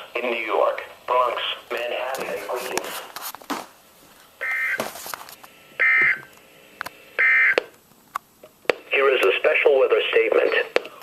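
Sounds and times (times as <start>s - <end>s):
buzzing data tones: 4.4s - 4.8s, 7.2s - 7.6s.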